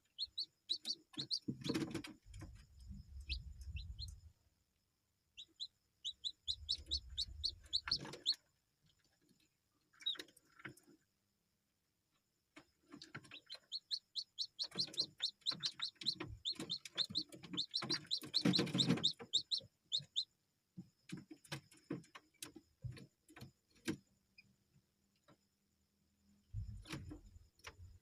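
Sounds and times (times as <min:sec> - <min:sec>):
chicks peeping: 0:00.0 - 0:04.3, 0:05.3 - 0:11.0, 0:12.6 - 0:20.3.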